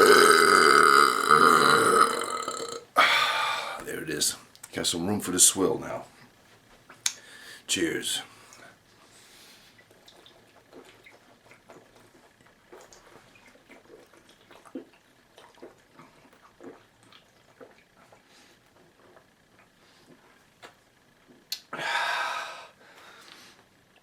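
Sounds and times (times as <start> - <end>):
man gulping liquid: 0.0 - 3.8, 9.8 - 22.0.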